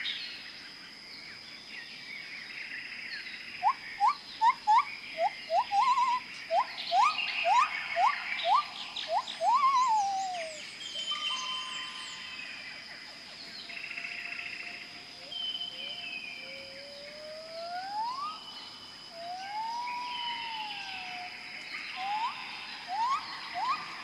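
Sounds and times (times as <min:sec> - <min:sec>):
insect drone: 0:00.0 - 0:24.0
birds whistling: 0:03.6 - 0:12.6, 0:15.2 - 0:18.6, 0:19.2 - 0:24.0
quick rising bird notes: 0:22.0 - 0:24.0.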